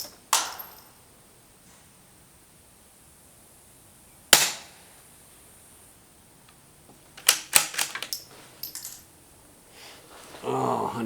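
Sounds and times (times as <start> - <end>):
suppressed rifle shot: 0.3 - 0.9, 4.3 - 4.8
rifle bolt metallic clicks: 7.2 - 8.2.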